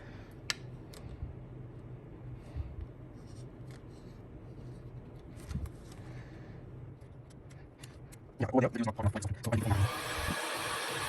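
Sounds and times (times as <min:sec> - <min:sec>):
low steady hum: 0:00.0 - 0:11.0
scratching and handling of phone: 0:02.5 - 0:08.3.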